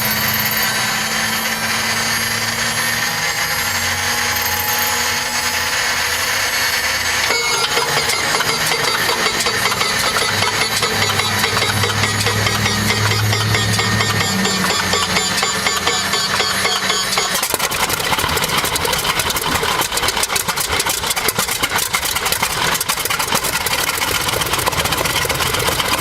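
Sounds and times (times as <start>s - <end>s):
large engine running: 0.0s - 26.0s
rapid engine clattering: 5.3s - 26.0s.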